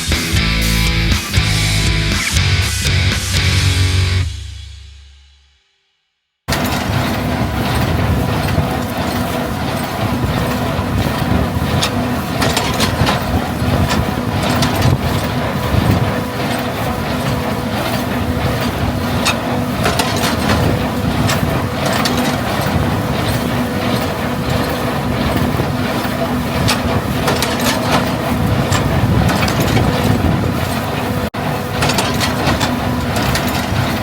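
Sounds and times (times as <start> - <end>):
farm machinery engine hum: 6.5 - 34.0
sharp clicks and rattles: 6.5 - 34.0.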